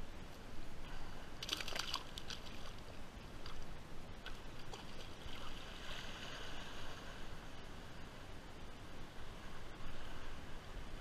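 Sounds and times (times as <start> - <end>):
water sloshing: 1.4 - 6.8
shallow water splashing: 1.4 - 7.1.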